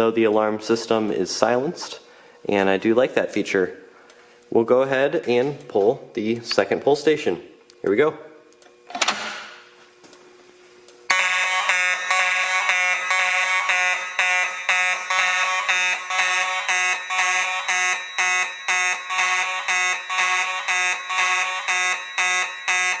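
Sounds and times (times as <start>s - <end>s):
fire alarm horns pulsing: 11.1s - 23.0s.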